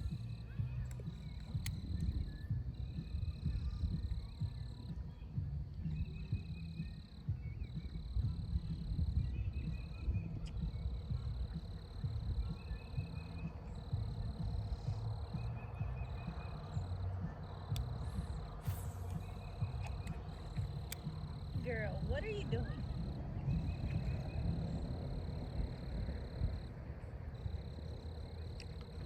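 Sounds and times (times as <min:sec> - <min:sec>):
microphone handling or wind rumble: 0:00.0 - 0:29.0
insects trilling: 0:05.9 - 0:29.0.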